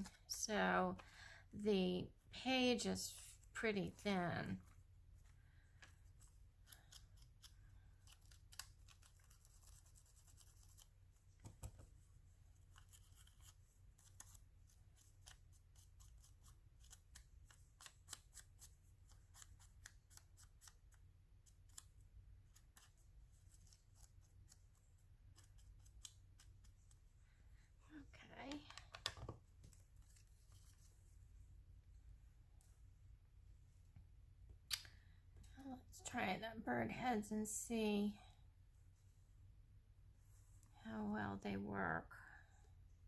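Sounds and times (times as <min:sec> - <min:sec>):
scissors snipping paper: 0:06.5 - 0:11.0, 0:12.7 - 0:27.0.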